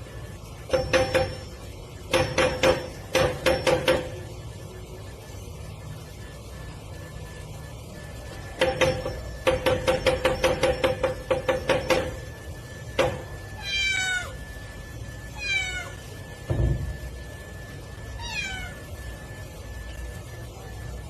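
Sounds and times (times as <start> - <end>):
cat meowing: 13.6 - 14.4, 15.4 - 16.0, 18.2 - 18.8.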